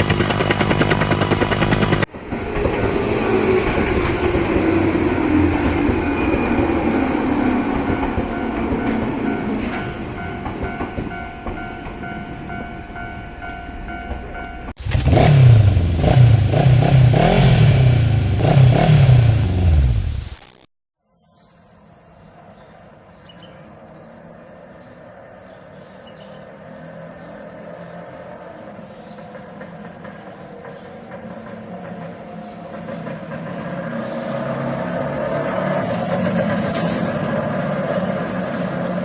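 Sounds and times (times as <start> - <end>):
train clattering: 0.0 - 14.8, 29.1 - 39.0.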